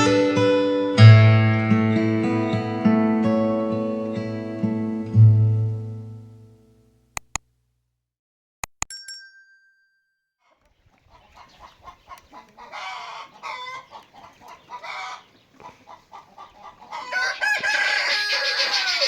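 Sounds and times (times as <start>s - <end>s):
chickens clucking: 10.4s - 19.0s
rooster crowing: 12.7s - 13.9s, 14.8s - 15.3s, 16.9s - 19.0s.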